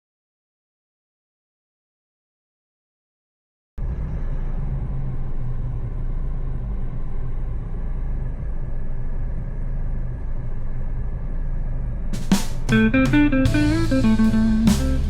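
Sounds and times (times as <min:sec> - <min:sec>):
car engine and road noise: 0:03.8 - 0:15.0.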